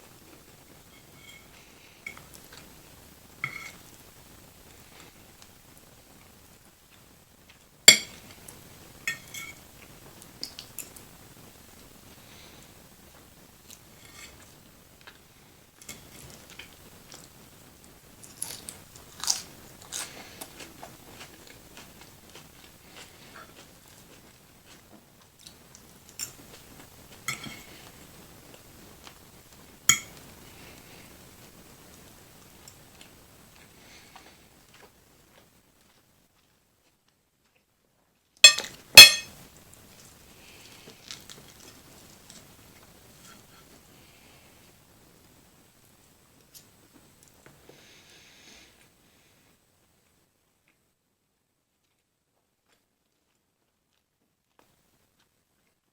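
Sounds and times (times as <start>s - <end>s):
tableware clinking: 1.0s - 1.5s, 3.4s - 3.8s, 7.9s - 8.2s, 9.1s - 9.6s, 27.3s - 27.7s, 29.9s - 30.2s, 38.4s - 39.3s
chewing with crisp crunches: 18.2s - 29.2s, 39.9s - 43.6s.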